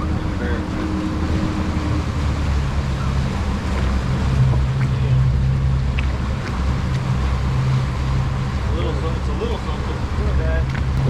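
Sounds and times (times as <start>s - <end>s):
boat engine humming: 0.0s - 11.0s
water noise: 0.0s - 11.0s
wind: 0.0s - 11.0s.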